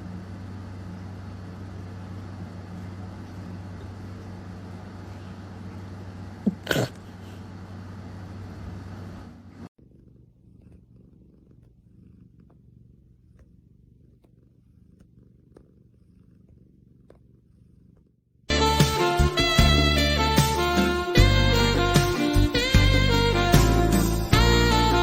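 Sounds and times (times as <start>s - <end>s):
cat purring: 0.0s - 8.8s, 9.8s - 23.4s
steady humming drone: 0.0s - 9.7s.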